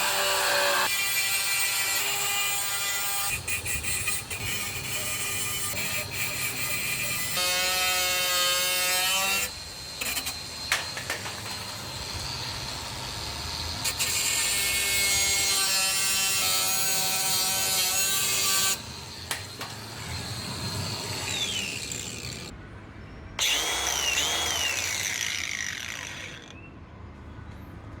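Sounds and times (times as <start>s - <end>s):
angle grinder cutting: 0.0s - 22.5s, 23.4s - 26.7s.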